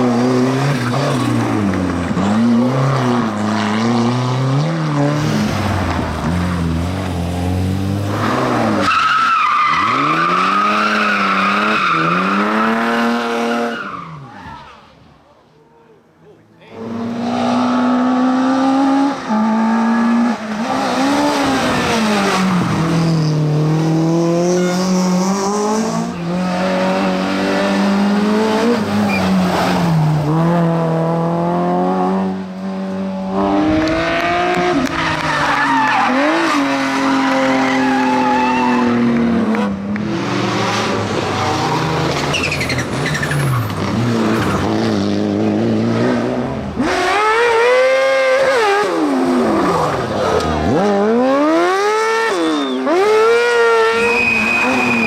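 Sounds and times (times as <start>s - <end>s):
race car engine revving: 16.7s - 55.0s.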